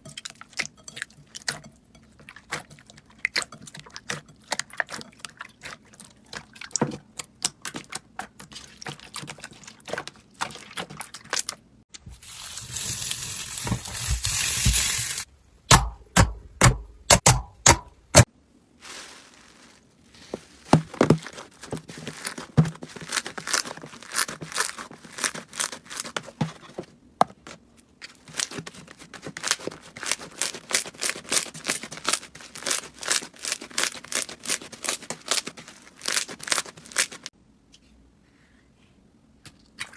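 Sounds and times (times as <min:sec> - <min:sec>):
slime crackling and popping: 0:29.2 - 0:37.3.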